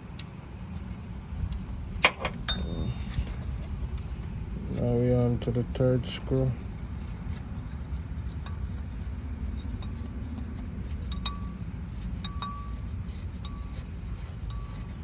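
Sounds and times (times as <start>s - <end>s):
steady low rumble: 0.0s - 15.0s
light metallic clinks: 2.4s - 3.3s.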